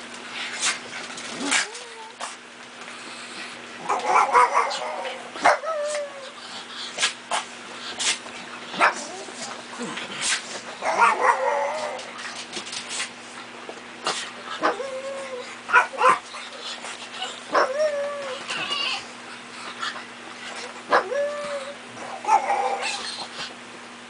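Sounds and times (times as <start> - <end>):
dogs yapping and howling: 3.8 - 6.5, 10.8 - 12.3, 14.5 - 19.1, 20.0 - 23.5.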